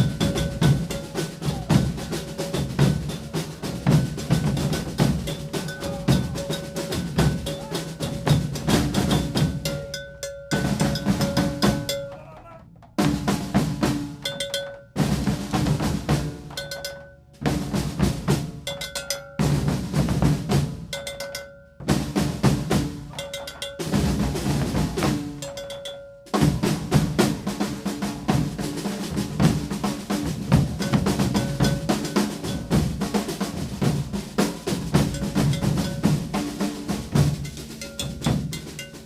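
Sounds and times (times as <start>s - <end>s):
bass drums and snare drums: 0.0s - 39.0s.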